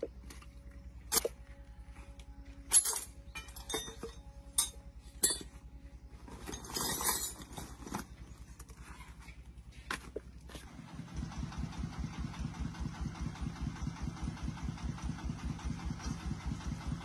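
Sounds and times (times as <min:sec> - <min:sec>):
metal parts clinking: 0:02.7 - 0:05.6, 0:06.3 - 0:08.1
diesel engine idling: 0:09.4 - 0:17.0.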